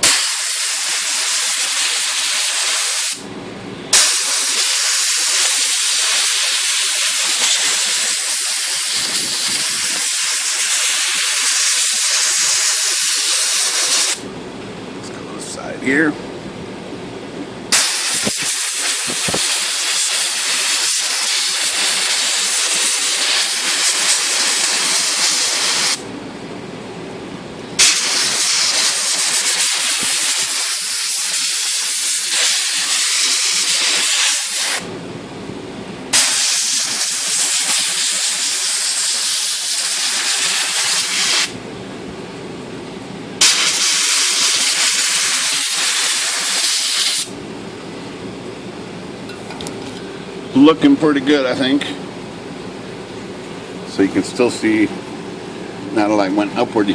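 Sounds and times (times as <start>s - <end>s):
compressed air hissing: 0.0s - 3.2s, 3.9s - 14.2s, 17.7s - 26.0s, 27.8s - 34.9s, 36.1s - 41.6s, 43.4s - 47.4s.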